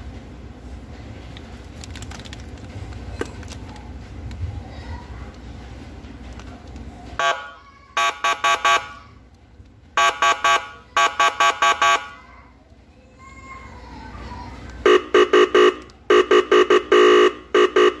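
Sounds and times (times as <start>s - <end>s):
horn-like electronic beeps: 7.2s - 9.0s, 10.0s - 12.1s, 14.8s - 18.0s.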